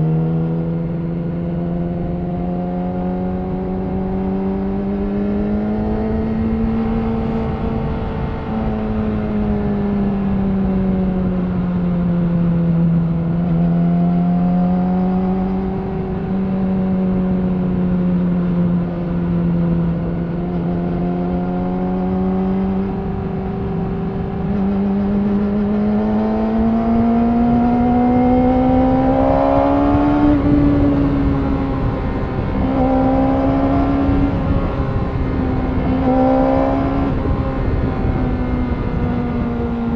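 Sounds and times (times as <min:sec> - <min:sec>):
motorcycle engine at mid revs: 0:00.0 - 0:39.9
wind rush: 0:00.0 - 0:39.9.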